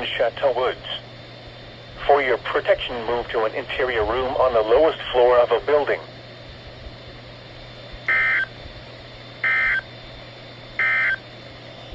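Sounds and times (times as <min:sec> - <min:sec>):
faint radio hiss: 0:00.0 - 0:07.2
harsh digital data bursts: 0:08.1 - 0:08.5, 0:09.4 - 0:09.9, 0:10.8 - 0:11.2.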